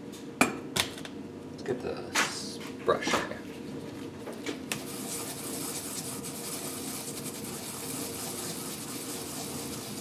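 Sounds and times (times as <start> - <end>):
hand brush scrubbing metal: 4.8 - 10.0.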